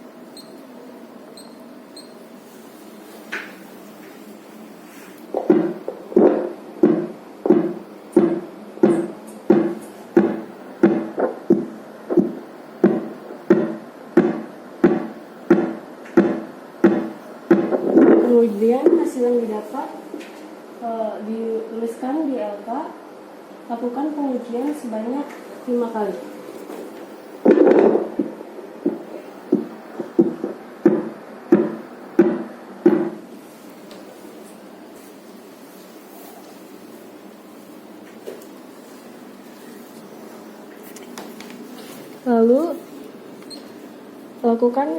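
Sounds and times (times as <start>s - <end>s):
fetal heartbeat pulse from doppler: 5.3s - 19.1s, 27.4s - 33.2s.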